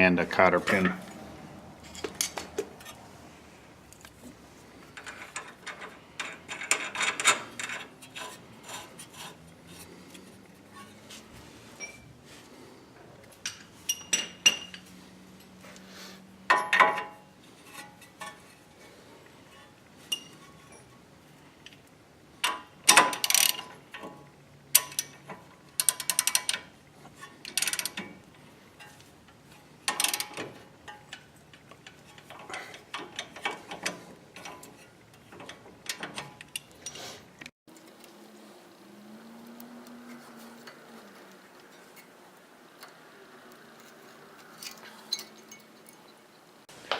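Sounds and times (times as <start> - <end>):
ratchet wrench clicking: 23.2 - 23.6
metal clinks: 43.8 - 46.5.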